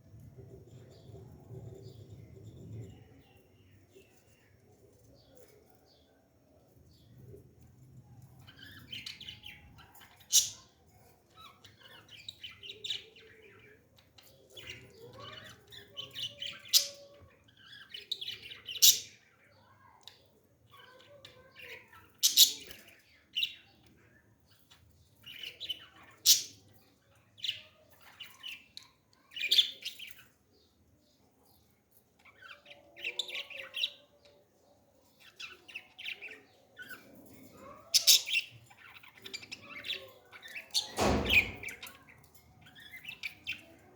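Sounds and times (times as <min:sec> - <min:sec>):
parrots chattering and chirping: 0:08.3 - 0:30.4, 0:32.2 - 0:34.4, 0:35.1 - 0:43.9.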